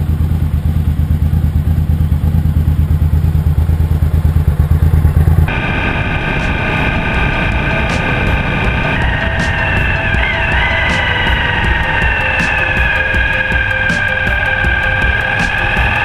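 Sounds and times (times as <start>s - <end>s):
motorcycle engine running: 0.0s - 16.0s
music: 5.5s - 16.0s.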